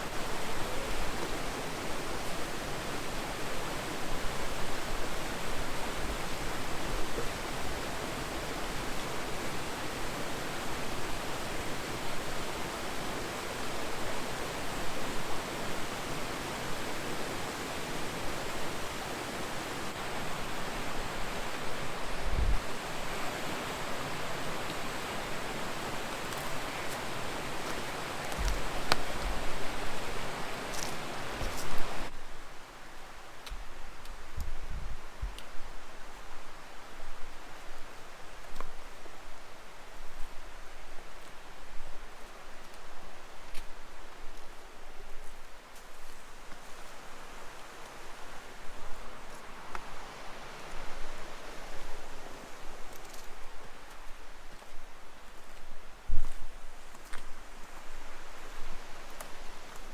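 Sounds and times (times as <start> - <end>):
creek water flowing: 0.0 - 32.1, 46.0 - 56.0.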